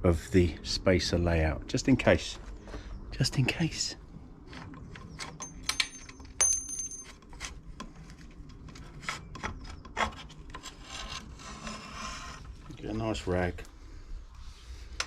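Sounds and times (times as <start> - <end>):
short metallic ring: 5.4 - 7.2.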